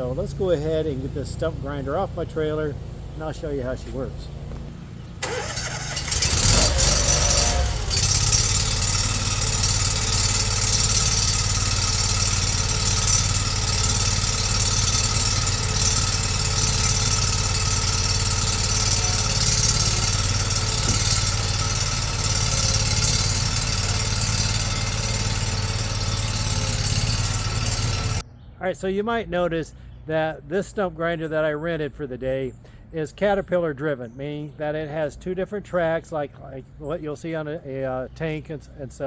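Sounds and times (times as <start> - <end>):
stump grinder engine running: 0.0 - 28.2.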